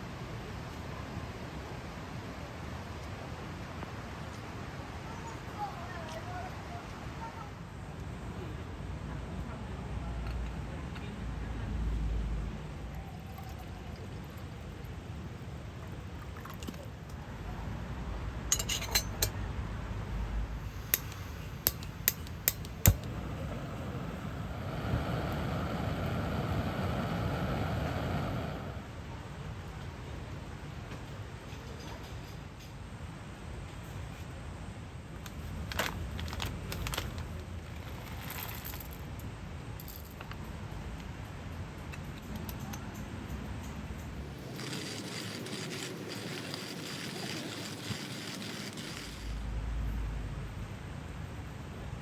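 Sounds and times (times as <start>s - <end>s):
dishes and utensils clinking: 18.5s - 19.4s
steady low rumble: 19.6s - 29.0s.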